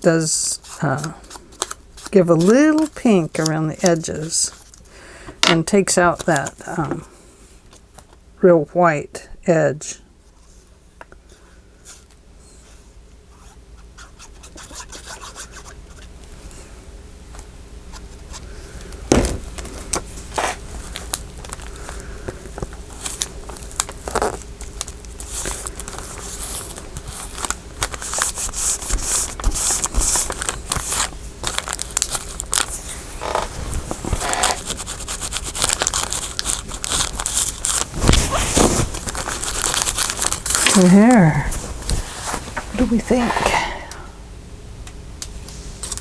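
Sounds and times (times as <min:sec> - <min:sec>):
paper crinkling and rustling: 0:00.6 - 0:04.9, 0:06.1 - 0:07.1, 0:19.2 - 0:43.4.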